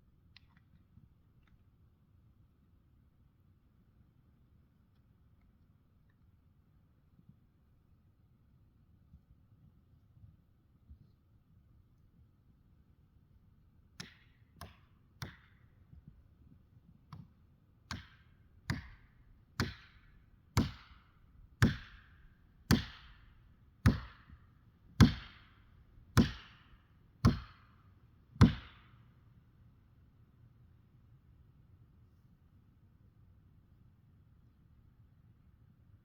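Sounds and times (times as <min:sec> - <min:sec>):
heavy strikes on wood: 0:17.9 - 0:19.0, 0:19.6 - 0:21.0, 0:21.6 - 0:22.1, 0:22.7 - 0:23.2, 0:23.9 - 0:24.3, 0:25.0 - 0:25.5, 0:26.2 - 0:26.7, 0:27.3 - 0:27.6, 0:28.4 - 0:28.8.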